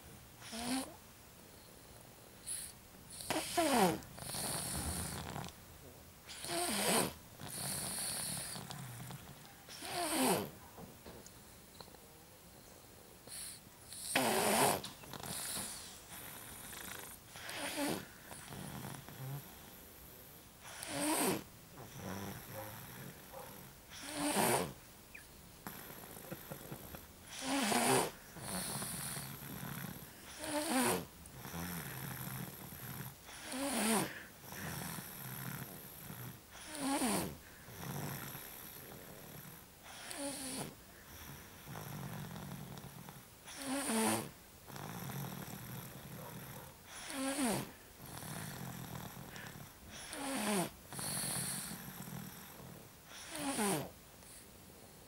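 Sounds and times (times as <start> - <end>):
child snoring: 0.4 - 1.0, 2.5 - 5.5, 6.3 - 10.6, 13.3 - 20.0, 20.6 - 54.4
soft breath: 46.2 - 50.2.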